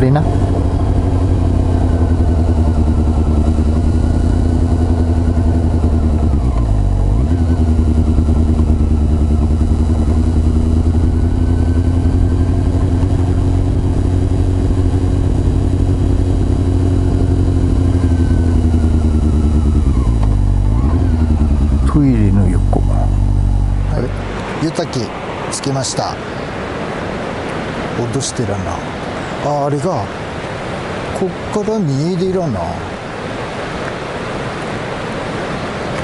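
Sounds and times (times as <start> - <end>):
motorcycle engine running: 0.0 - 25.3.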